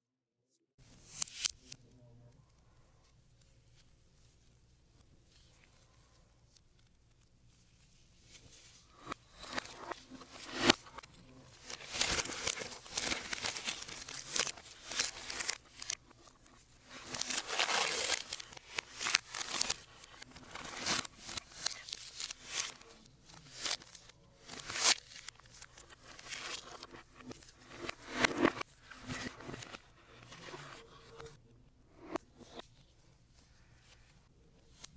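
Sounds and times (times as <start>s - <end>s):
packaging crinkling and tearing: 9.0s - 29.7s.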